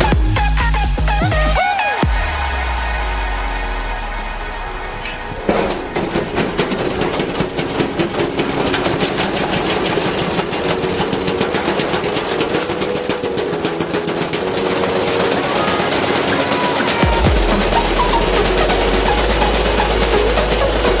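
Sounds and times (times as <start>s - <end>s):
washing machine drum clattering: 5.0s - 20.4s.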